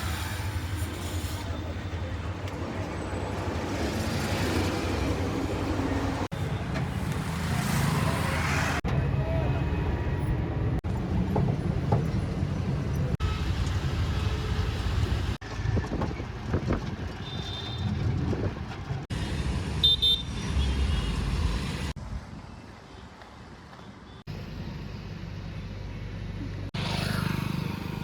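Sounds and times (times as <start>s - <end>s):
road traffic engine rumble: 0.0s - 22.4s.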